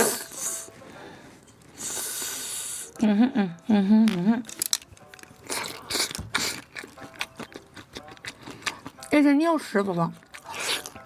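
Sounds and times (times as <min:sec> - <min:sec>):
breathy hissing noises: 0:00.0 - 0:03.0.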